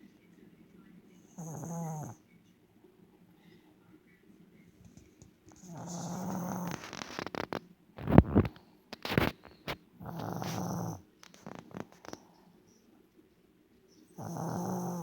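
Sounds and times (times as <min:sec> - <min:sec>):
dog snoring: 0:01.3 - 0:02.2, 0:05.6 - 0:08.5, 0:10.0 - 0:12.2, 0:14.2 - 0:15.0.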